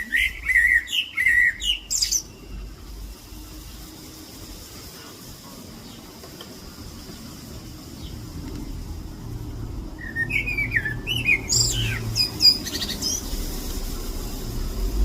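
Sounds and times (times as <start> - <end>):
bird chirping: 0.0 - 3.8, 9.8 - 14.2.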